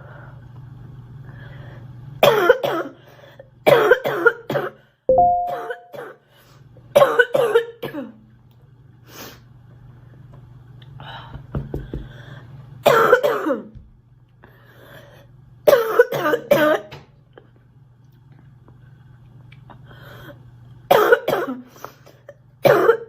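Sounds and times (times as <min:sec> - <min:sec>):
girl coughing: 0:02.2 - 0:03.0, 0:03.7 - 0:04.8, 0:05.5 - 0:06.2, 0:07.0 - 0:08.2, 0:12.8 - 0:13.7, 0:15.7 - 0:16.9, 0:20.9 - 0:21.7, 0:22.6 - 0:23.0.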